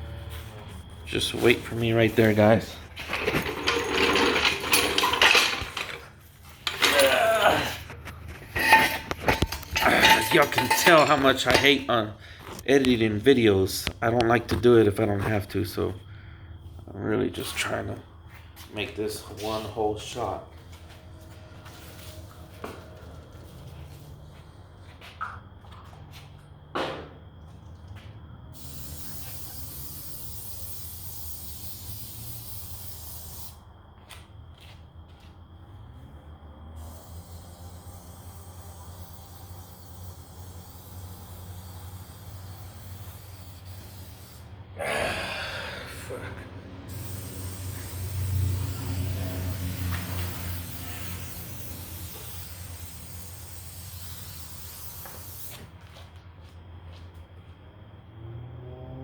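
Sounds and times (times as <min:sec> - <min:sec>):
aerosol can spraying hiss: 0:28.6 - 0:33.6, 0:37.4 - 0:44.5, 0:46.9 - 0:55.6.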